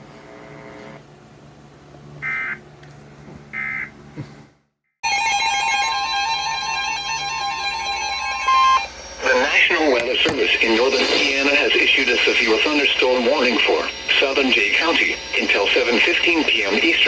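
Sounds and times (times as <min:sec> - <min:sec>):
two-tone emergency alert alarm: 0:03.6 - 0:03.9, 0:05.0 - 0:17.0
faint broadcast audio: 0:09.2 - 0:17.0.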